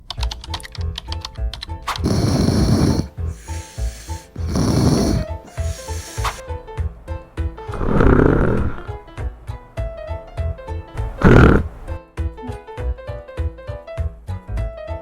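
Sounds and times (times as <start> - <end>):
light background music: 0.0 - 15.0
person snoring loudly: 2.0 - 6.4, 7.7 - 9.0, 11.1 - 12.0.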